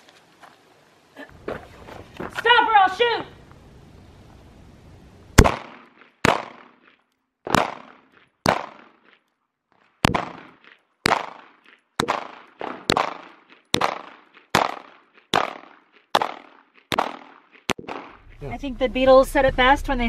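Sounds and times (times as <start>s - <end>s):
pistol shots with echo: 5.4s - 6.9s, 7.5s - 9.0s, 10.0s - 18.2s.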